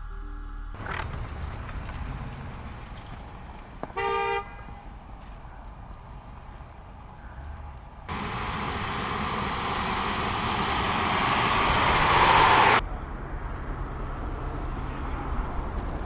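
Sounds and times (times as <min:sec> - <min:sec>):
low road rumble: 0:00.5 - 0:16.0
vehicle rushing past: 0:08.1 - 0:12.8.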